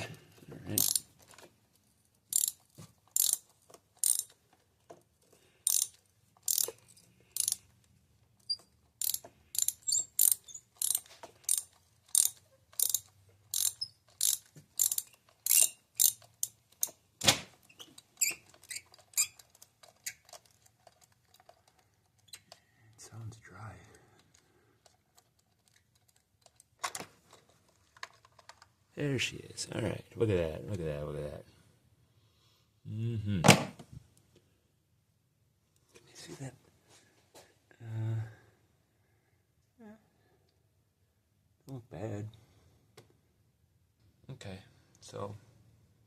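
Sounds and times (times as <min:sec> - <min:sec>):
ratchet wrench clicking: 0:00.8 - 0:01.1, 0:02.3 - 0:04.4, 0:05.6 - 0:07.7, 0:09.0 - 0:17.0.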